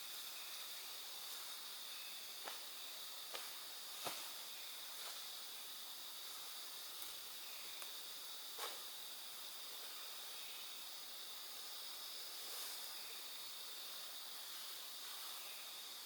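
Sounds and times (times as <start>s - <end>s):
soft hiss: 0.0s - 16.0s.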